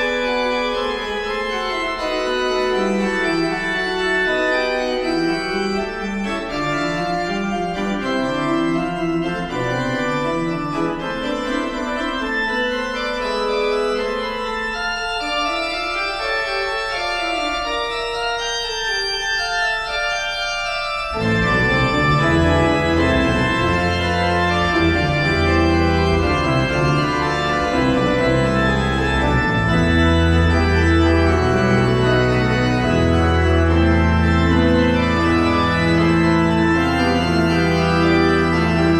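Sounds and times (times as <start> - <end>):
organ chords: 0.0 - 38.9
deep organ bass notes: 21.0 - 38.9.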